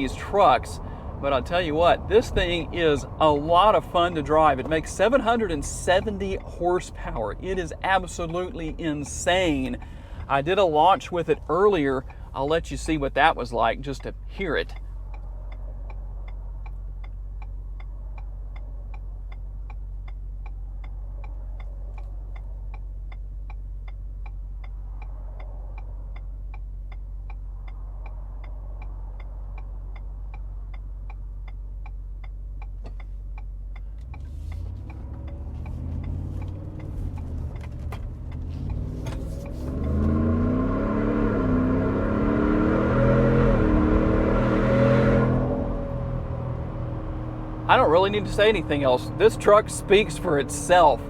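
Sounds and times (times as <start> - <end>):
truck engine idling: 0.0 - 39.7, 46.2 - 51.0
steady clicking: 1.6 - 40.2
engine revving and accelerating: 33.7 - 51.0.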